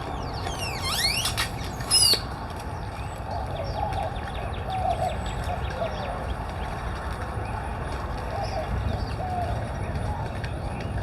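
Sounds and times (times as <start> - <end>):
doves cooing: 3.3 - 6.4.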